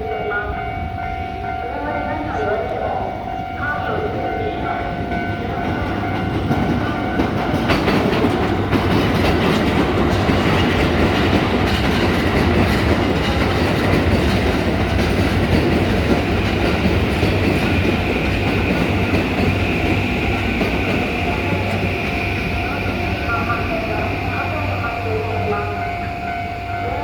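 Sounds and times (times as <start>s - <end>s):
train wheels clattering over rail joints: 6.1s - 22.1s.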